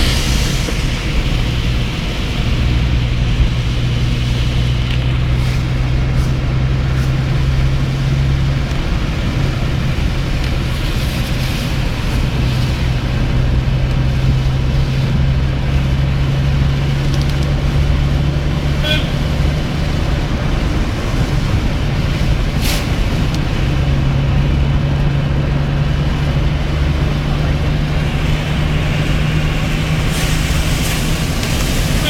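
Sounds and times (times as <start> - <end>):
car engine hum: 0.0 - 32.0
tyres on wet road: 0.0 - 32.0.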